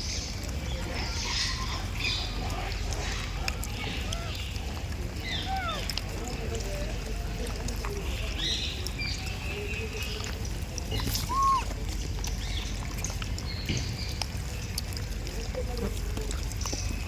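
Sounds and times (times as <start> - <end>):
high chirping animal calls: 10.9 - 11.7.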